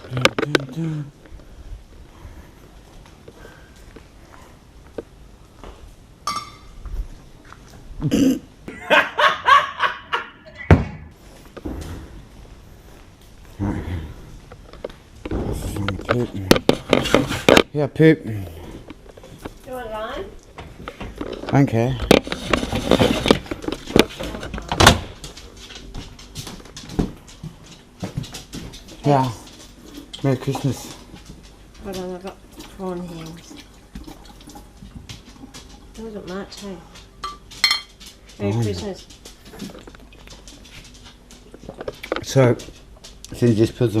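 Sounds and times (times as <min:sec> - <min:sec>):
man burping: 0:08.0 - 0:08.5
man laughing: 0:08.0 - 0:10.7
knocks and scraping: 0:14.4 - 0:17.7, 0:20.5 - 0:30.8.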